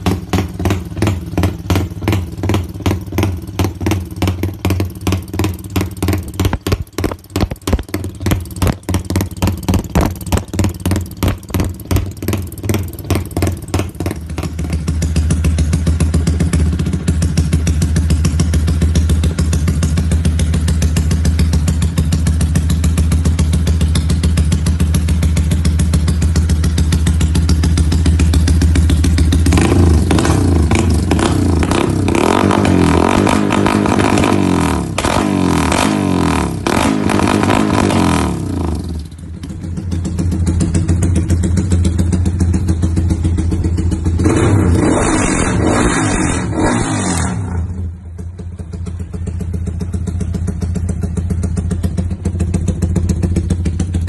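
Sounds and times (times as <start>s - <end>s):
motorcycle engine idling and revving: 0.0s - 54.0s
exhaust pops: 5.4s - 14.7s.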